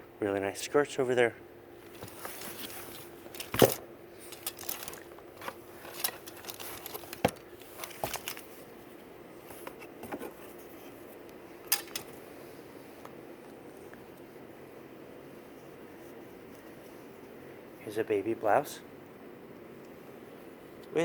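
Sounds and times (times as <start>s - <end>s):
faint steady hum: 0.0s - 21.0s
hands rummaging through clothing: 1.8s - 14.2s.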